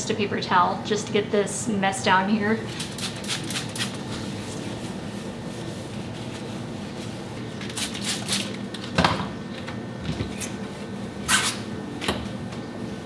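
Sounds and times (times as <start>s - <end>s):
paper towel rubbing: 2.7s - 8.0s.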